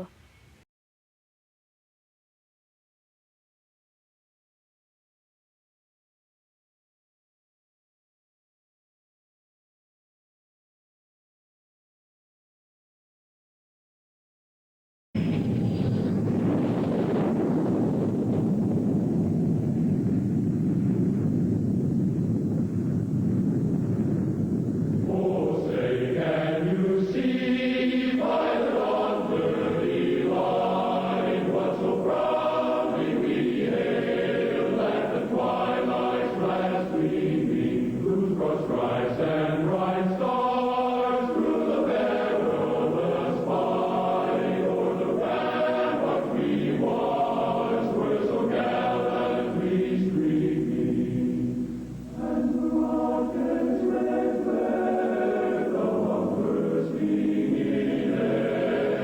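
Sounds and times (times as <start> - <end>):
low steady rumble: 15.2 - 59.0
choir singing chant-like chords: 24.9 - 59.0.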